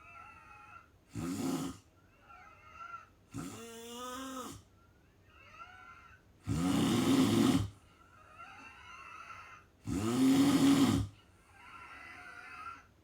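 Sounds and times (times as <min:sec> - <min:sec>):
person snoring: 0:01.1 - 0:01.8, 0:03.4 - 0:04.6, 0:06.5 - 0:07.8, 0:09.9 - 0:12.7.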